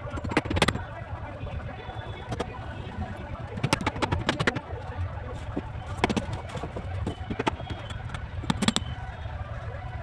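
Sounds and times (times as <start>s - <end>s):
sharp knocks and clicks: 0.0s - 0.9s, 3.5s - 4.6s, 6.0s - 9.0s.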